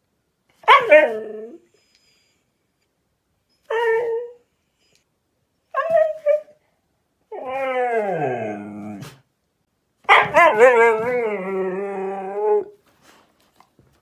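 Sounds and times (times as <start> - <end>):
dog howling: 7.3 - 9.2, 10.1 - 12.8.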